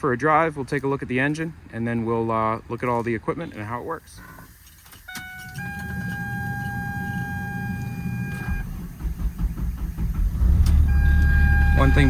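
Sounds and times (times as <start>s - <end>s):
diesel engine cranking and running: 4.7s - 12.0s
electronic warning tone: 5.1s - 8.7s, 10.8s - 12.0s
low hum: 5.8s - 12.0s.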